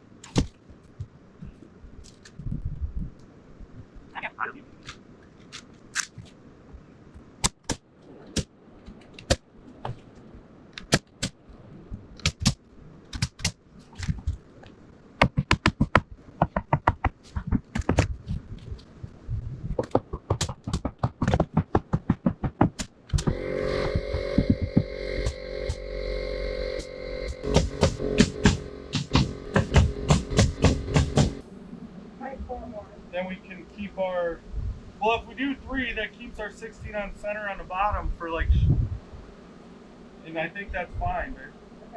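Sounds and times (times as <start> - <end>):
background music: 23.3 - 31.4
knocks on wood framing: 27.5 - 31.4.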